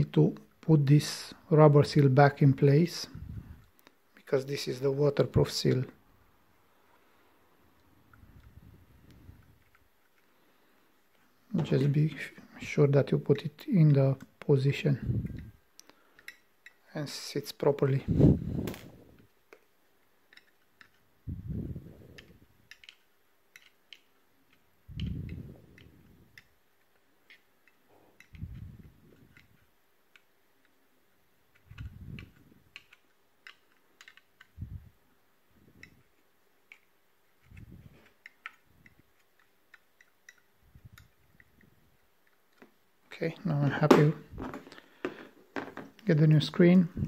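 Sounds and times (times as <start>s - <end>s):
small clicks: 22.0s - 30.8s, 31.5s - 34.7s.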